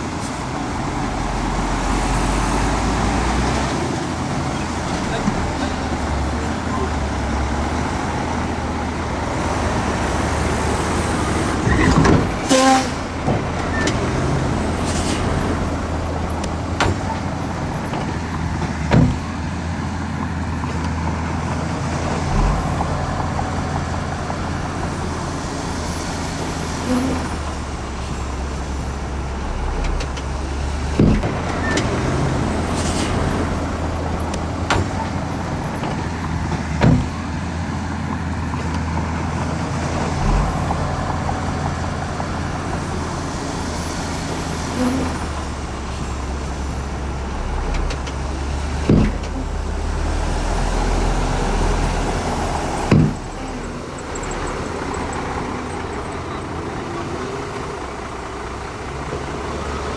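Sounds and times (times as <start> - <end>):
diesel engine running: 0.0 - 59.9
sharp metallic knocks and clanks: 16.3 - 19.3, 52.2 - 56.5.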